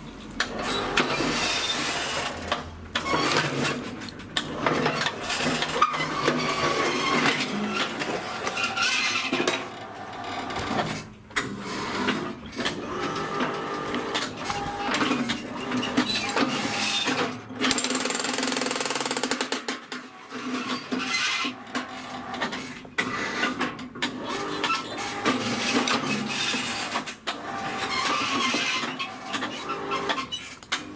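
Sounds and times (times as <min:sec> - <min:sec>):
jackhammer hammering: 0:17.6 - 0:19.8.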